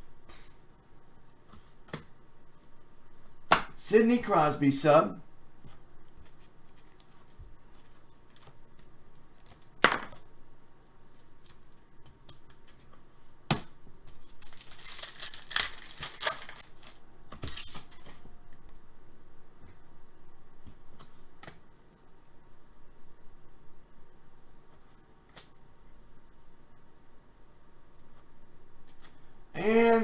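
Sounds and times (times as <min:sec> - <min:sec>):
wrapper crinkling and tearing: 0:14.2 - 0:18.2.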